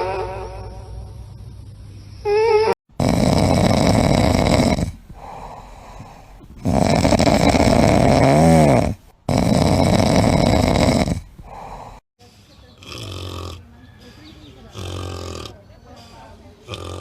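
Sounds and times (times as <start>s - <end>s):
animal snoring loudly: 2.9s - 12.0s, 12.8s - 13.8s, 14.6s - 17.0s.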